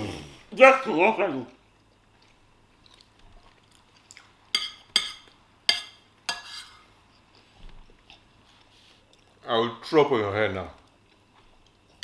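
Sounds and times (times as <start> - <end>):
cutlery clinking against plate: 4.6 - 6.8.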